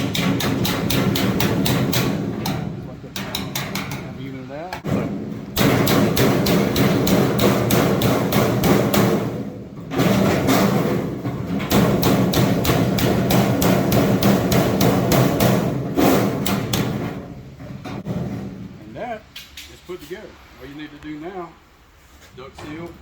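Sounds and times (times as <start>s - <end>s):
hammer tapping sheet metal: 0.0s - 4.1s, 5.6s - 17.2s.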